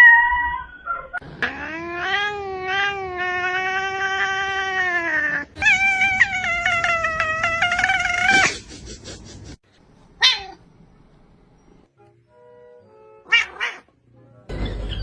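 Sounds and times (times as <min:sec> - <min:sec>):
cat yowling: 0:00.0 - 0:08.5, 0:10.2 - 0:10.6, 0:13.3 - 0:13.9
cat meowing: 0:01.4 - 0:08.5, 0:13.3 - 0:13.9.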